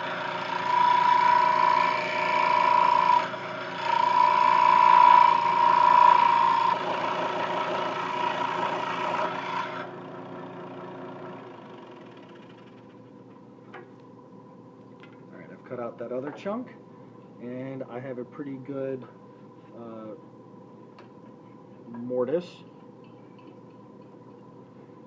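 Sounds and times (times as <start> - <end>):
scroll saw cutting wood: 0.0 - 10.0.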